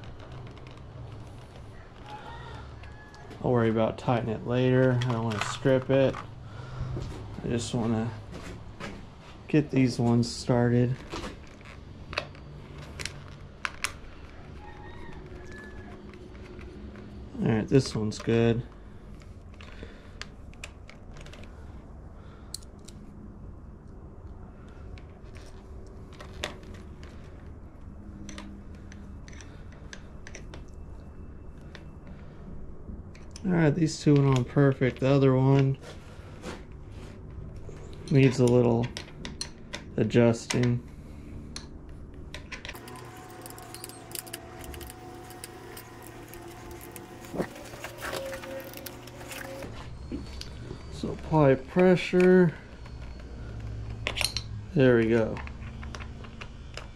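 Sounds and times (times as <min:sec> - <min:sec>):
steady low hum: 0:15.9 - 0:56.9
metallic clicks of hand tools: 0:54.0 - 0:54.5.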